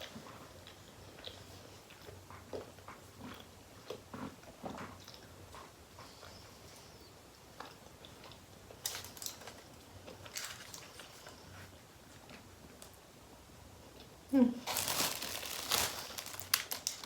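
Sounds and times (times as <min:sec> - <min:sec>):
chewing and biting: 0:00.0 - 0:06.6
sharp crackles: 0:14.7 - 0:17.0.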